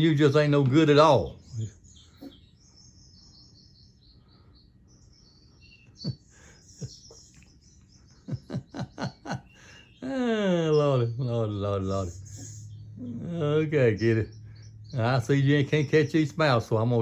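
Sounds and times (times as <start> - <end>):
birds chirping and trilling: 0.0 - 17.0
short sharp bird notes: 10.9 - 17.0.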